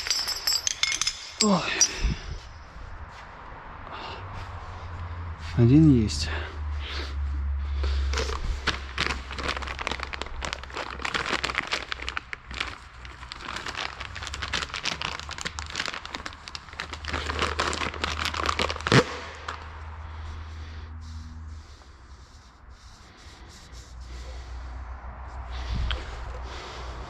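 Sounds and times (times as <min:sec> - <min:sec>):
hand tools clicking and scraping metal: 0:00.0 - 0:02.4.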